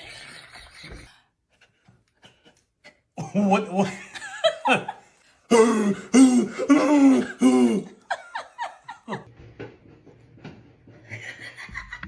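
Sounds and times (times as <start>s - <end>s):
person making silly wordless sounds: 3.2s - 4.0s, 5.5s - 8.0s.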